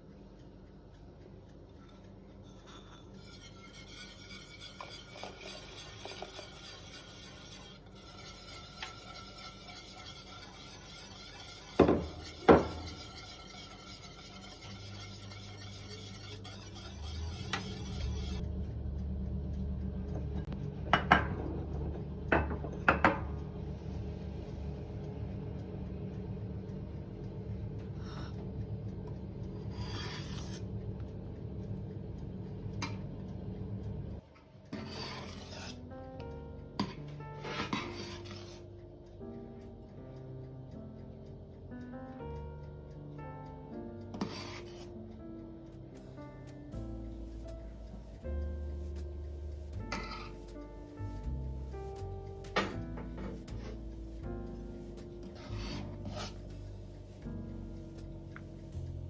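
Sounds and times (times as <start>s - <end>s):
low steady hum: 0.0s - 59.0s
utensil scraping cookware: 2.4s - 18.4s, 28.0s - 28.4s, 29.7s - 30.6s, 34.7s - 35.8s, 36.8s - 38.6s, 44.1s - 44.9s, 49.8s - 50.5s, 52.6s - 53.9s, 55.2s - 56.6s.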